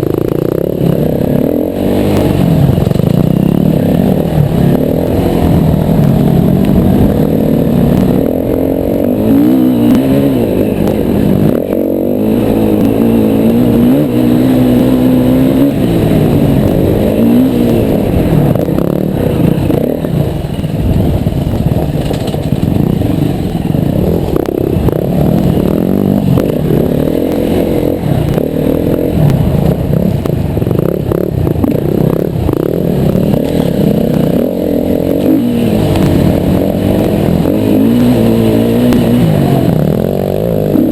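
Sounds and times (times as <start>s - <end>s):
dirt bike engine revving: 0.0s - 40.9s
bike knocks and rattles: 20.6s - 23.0s.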